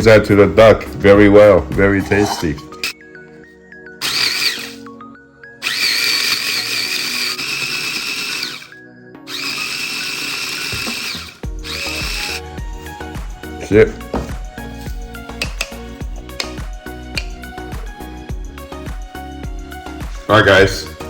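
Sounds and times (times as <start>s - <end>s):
electric blender grinding spices: 4.0s - 4.8s, 5.6s - 12.5s.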